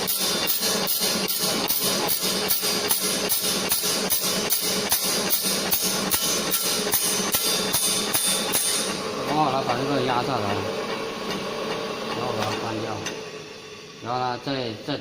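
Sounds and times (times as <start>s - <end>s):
saw blade grinder grinding: 0.0s - 9.0s
machine clacking stroke: 0.0s - 13.2s.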